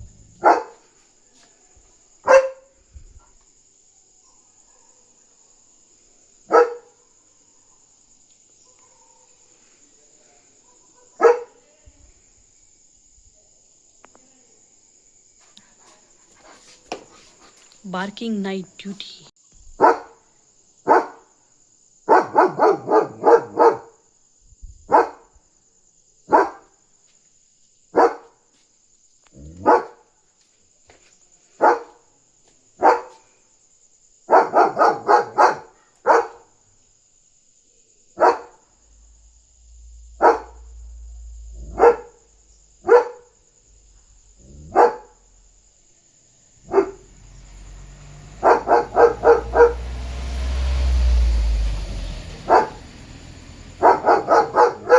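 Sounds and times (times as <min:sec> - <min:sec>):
dog barking loudly: 0:00.2 - 0:00.9, 0:02.2 - 0:02.6, 0:06.5 - 0:06.9, 0:11.2 - 0:11.6, 0:22.1 - 0:24.0, 0:26.3 - 0:26.6, 0:28.0 - 0:28.2, 0:29.6 - 0:30.0, 0:31.6 - 0:32.0, 0:32.8 - 0:33.2, 0:34.3 - 0:36.4, 0:38.2 - 0:38.6, 0:40.2 - 0:40.6, 0:41.6 - 0:42.2, 0:42.8 - 0:43.3, 0:44.4 - 0:45.2, 0:46.6 - 0:50.0, 0:52.3 - 0:54.9.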